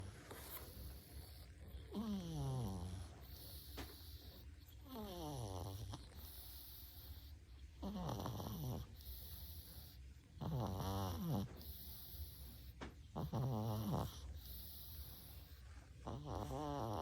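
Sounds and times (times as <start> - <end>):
cat snoring: 0.0 - 17.0.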